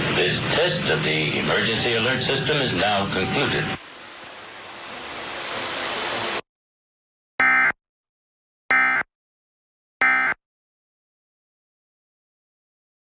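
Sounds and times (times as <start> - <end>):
static hiss: 2.5 - 6.4.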